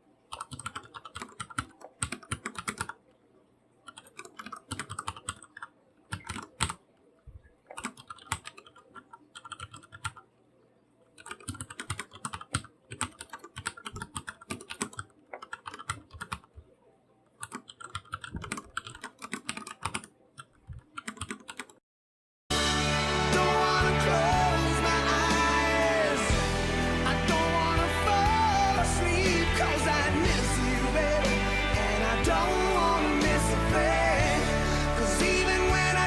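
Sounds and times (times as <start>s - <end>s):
typing on computer keyboard: 0.3s - 3.0s, 3.8s - 6.8s, 7.7s - 10.3s, 11.2s - 16.6s, 17.4s - 21.8s.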